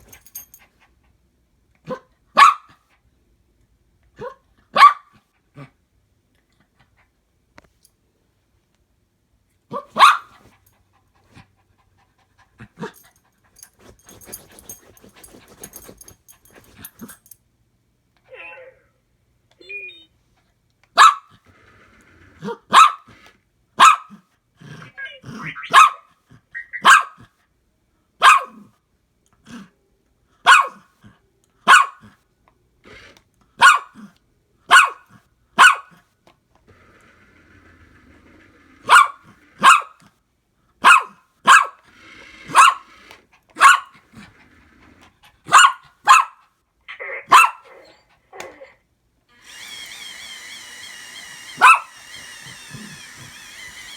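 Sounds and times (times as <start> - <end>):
dog barking: 1.9 - 2.8, 4.2 - 5.2, 9.7 - 10.3, 21.0 - 21.3, 22.7 - 23.1, 23.8 - 24.2, 25.7 - 26.1, 26.8 - 27.2, 28.2 - 28.6, 30.4 - 30.9, 31.6 - 32.1, 33.6 - 34.0, 34.7 - 36.0, 38.9 - 40.0, 40.8 - 41.8, 42.5 - 42.9, 43.6 - 44.0, 45.5 - 46.4, 47.3 - 47.8, 51.6 - 51.9.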